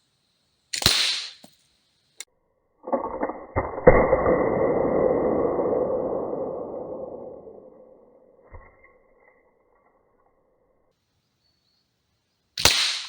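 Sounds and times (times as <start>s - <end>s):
sharp explosive cracks: 0.8s - 1.5s, 2.8s - 8.5s, 12.6s - 13.0s.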